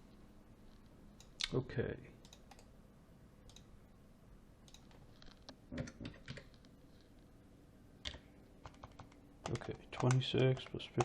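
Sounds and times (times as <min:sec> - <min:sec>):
computer keyboard keystrokes: 0:05.8 - 0:06.5, 0:08.0 - 0:11.0.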